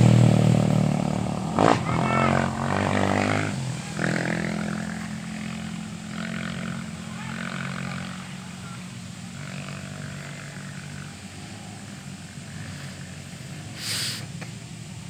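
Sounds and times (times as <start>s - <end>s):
motorcycle engines droning: 0.0s - 15.0s.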